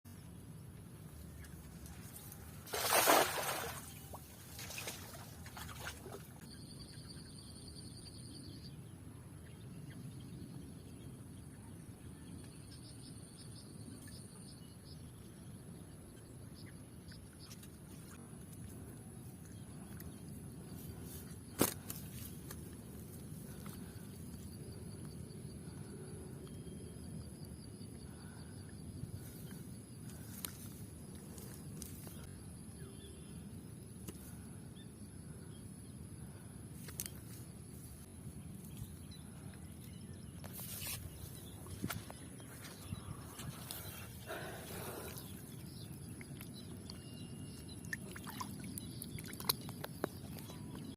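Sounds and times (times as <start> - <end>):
insect chirping: 0.2 - 11.4, 12.2 - 50.9
water splashing and trickling: 1.3 - 6.4, 41.5 - 50.9
pulsing insect trill: 37.2 - 50.9.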